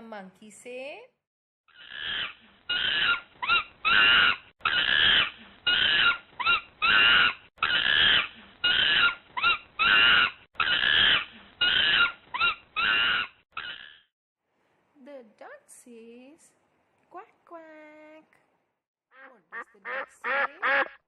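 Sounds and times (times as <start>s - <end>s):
monkey calling: 1.7s - 14.0s.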